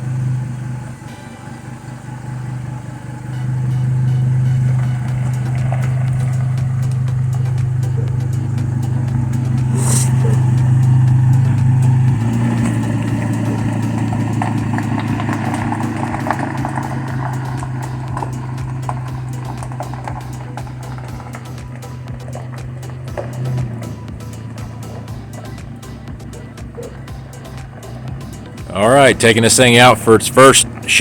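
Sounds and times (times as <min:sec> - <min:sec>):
pickup engine running: 0:00.0 - 0:31.0
brief hiss: 0:09.7 - 0:10.4.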